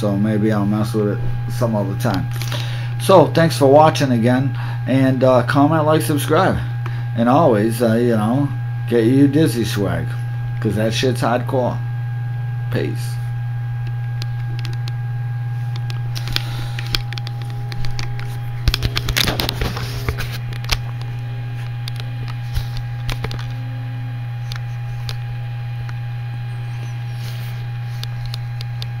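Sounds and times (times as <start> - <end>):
low hum: 0.0 - 29.0
handling clicks and rustling: 15.7 - 23.6.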